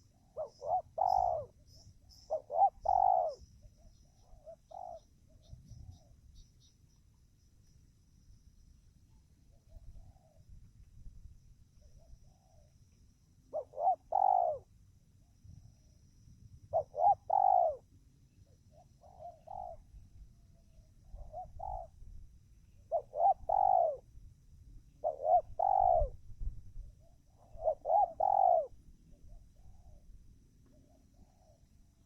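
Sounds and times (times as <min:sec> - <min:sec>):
dove cooing: 0:00.0 - 0:06.2, 0:09.5 - 0:10.6, 0:11.8 - 0:12.8, 0:13.5 - 0:14.7, 0:16.7 - 0:17.9, 0:18.7 - 0:22.0, 0:22.9 - 0:24.1, 0:25.0 - 0:26.2, 0:27.0 - 0:31.7.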